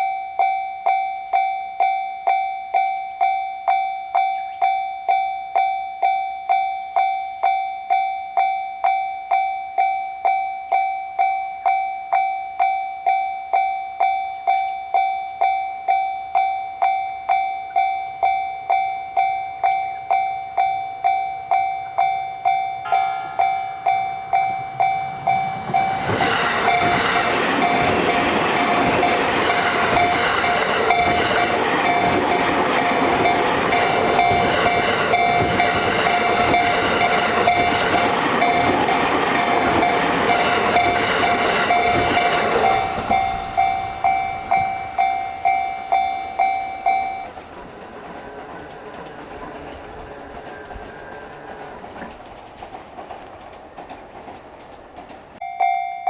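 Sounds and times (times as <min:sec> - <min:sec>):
railroad crossing bell ringing: 0:00.0 - 0:56.0
train rushing past: 0:20.6 - 0:55.5.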